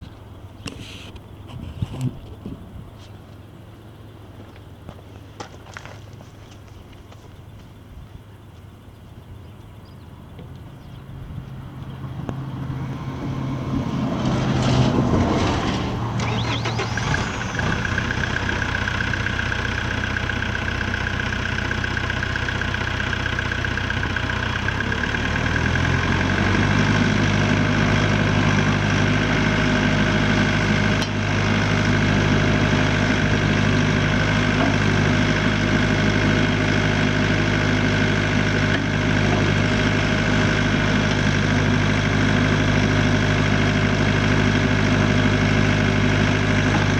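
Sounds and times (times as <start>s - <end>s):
diesel engine starting and idling: 9.4s - 46.9s.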